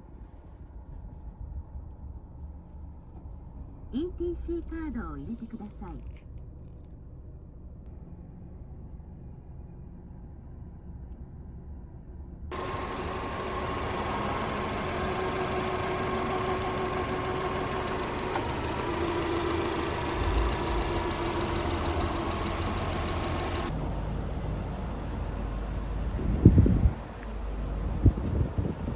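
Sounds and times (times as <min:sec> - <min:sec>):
car engine idling: 0:12.5 - 0:28.9.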